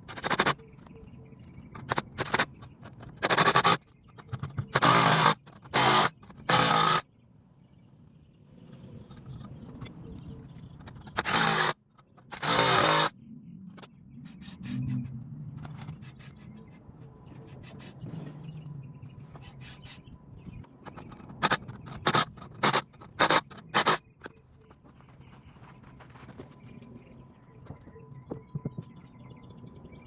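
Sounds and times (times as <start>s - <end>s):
power tool bursts: 0.1s - 0.6s, 3.2s - 3.8s, 4.8s - 7.0s, 11.2s - 13.1s, 21.4s - 24.0s.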